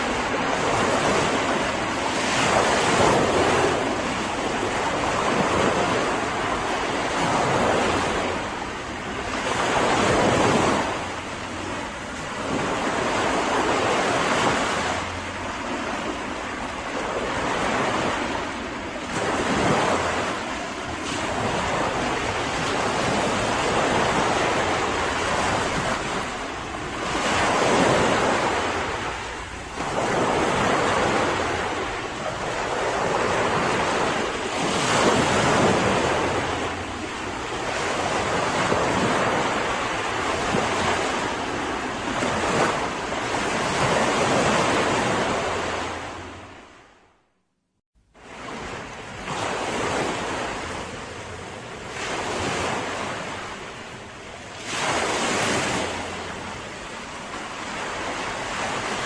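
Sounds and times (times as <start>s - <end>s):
wind noise on microphone: 0.0s - 46.8s
sea waves breaking on beach: 0.0s - 47.0s, 48.2s - 59.0s.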